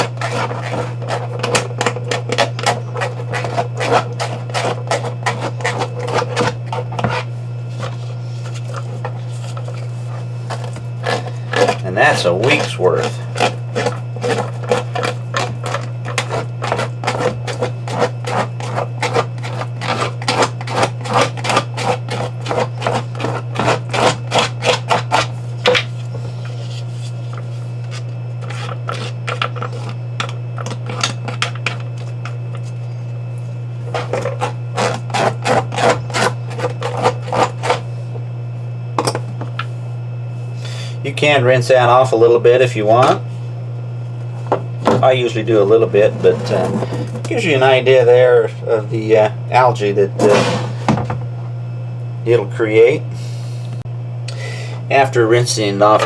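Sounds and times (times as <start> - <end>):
fast scraping strokes: 0.0 - 25.4, 33.9 - 37.8
steady low hum: 0.0 - 56.0.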